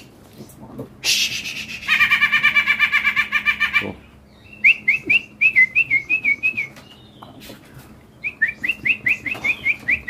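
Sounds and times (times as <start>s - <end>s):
songbird singing whistled notes: 4.3s - 10.0s.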